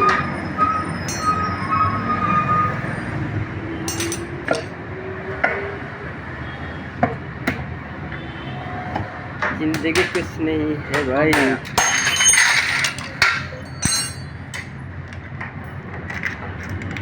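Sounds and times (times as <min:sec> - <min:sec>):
metal tools clinking: 0:00.9 - 0:01.8, 0:03.9 - 0:04.8, 0:11.6 - 0:14.8.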